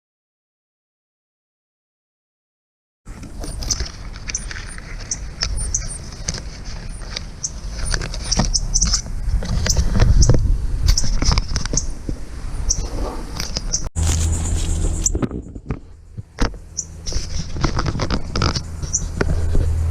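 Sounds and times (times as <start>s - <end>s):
low steady rumble: 3.1s - 19.9s
small birds chirping: 3.2s - 12.0s, 12.6s - 13.9s, 16.0s - 19.2s.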